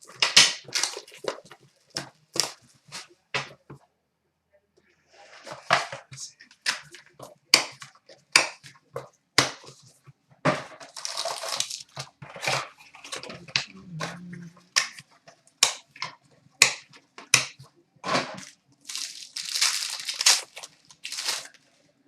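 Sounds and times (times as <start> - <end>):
packaging tearing and crinkling: 0.0 - 3.0, 10.8 - 13.5, 18.4 - 21.7
rustling: 10.8 - 15.4, 18.3 - 22.0.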